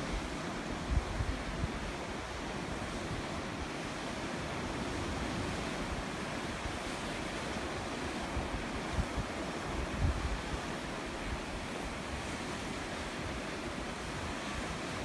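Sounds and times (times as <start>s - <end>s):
sea waves washing on shore: 0.0s - 15.0s
wind buffeting microphone: 7.8s - 15.0s.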